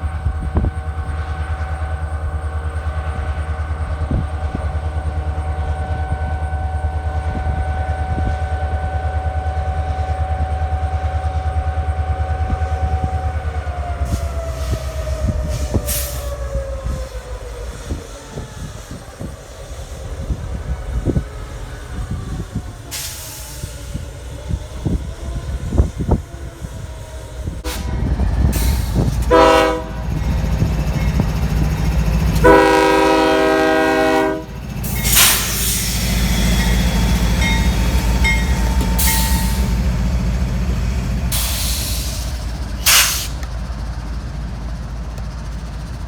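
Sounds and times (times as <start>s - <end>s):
diesel train rumble: 0.0s - 46.0s
wheels clacking on rail joints: 20.6s - 46.0s
brief hisses: 41.4s - 43.4s.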